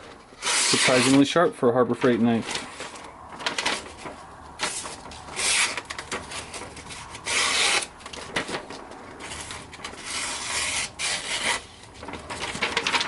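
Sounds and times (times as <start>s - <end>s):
knife slicing through paper: 0.4s - 1.2s, 4.6s - 8.5s, 9.2s - 13.0s.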